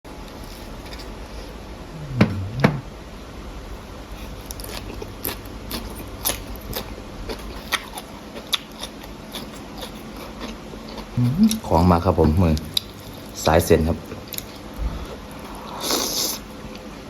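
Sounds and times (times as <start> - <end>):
person chewing food: 4.2 - 11.7, 14.1 - 16.9.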